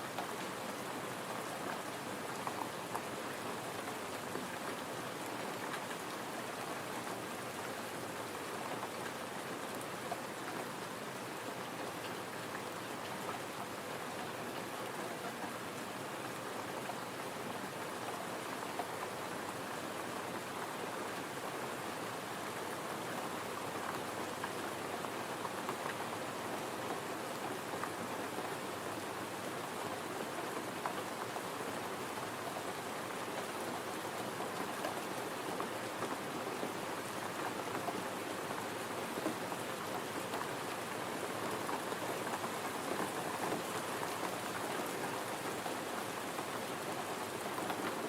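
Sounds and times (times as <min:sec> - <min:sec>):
gentle rain falling: 0:00.0 - 0:48.0.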